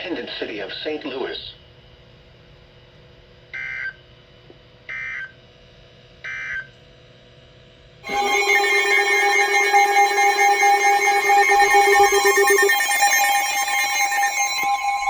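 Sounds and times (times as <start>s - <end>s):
digital data bursts: 8.1s - 15.0s
steady alert tones: 8.1s - 15.0s.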